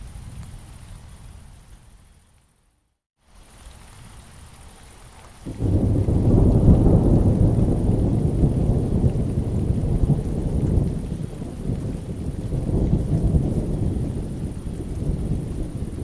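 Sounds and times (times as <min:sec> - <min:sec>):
faint rain hiss: 0:00.0 - 0:16.0
deep rolling thunder: 0:05.5 - 0:16.0.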